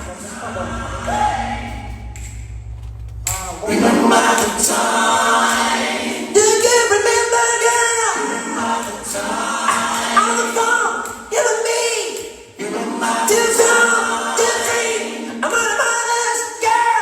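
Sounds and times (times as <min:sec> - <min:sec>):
voices singing in harmony: 0:00.0 - 0:02.7, 0:03.3 - 0:17.0
low steady hum: 0:00.0 - 0:07.4.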